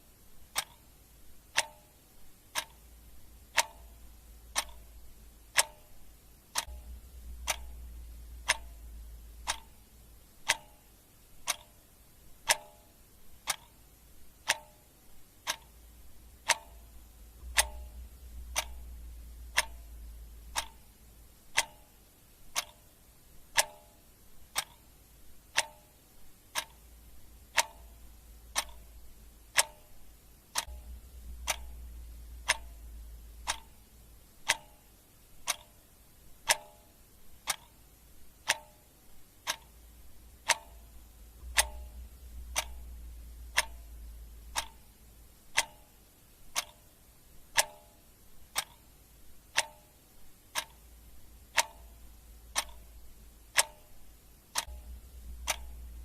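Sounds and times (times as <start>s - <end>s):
faint low hum: 0.0s - 56.0s
mechanical clock ticking: 0.0s - 56.0s.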